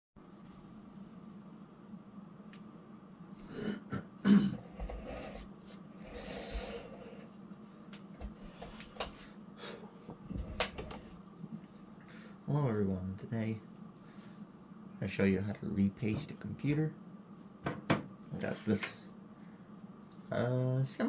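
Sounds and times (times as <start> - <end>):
steady low hum: 0.2 - 21.0
man clearing his throat: 3.5 - 4.8
breathing: 6.1 - 7.3, 12.0 - 12.4, 14.0 - 14.5, 19.3 - 19.8.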